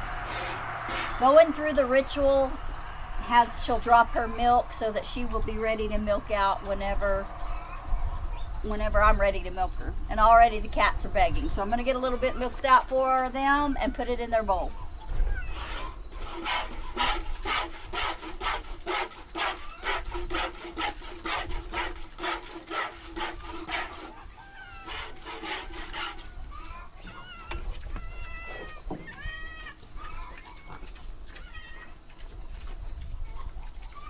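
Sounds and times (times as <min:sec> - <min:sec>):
cats meowing: 0:26.5 - 0:32.0.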